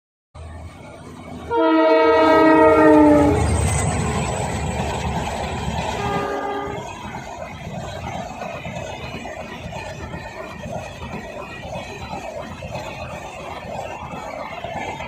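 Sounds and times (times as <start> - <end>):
moving train rumble: 0.4 - 15.0
train horn blasts: 1.5 - 3.6, 5.9 - 6.9.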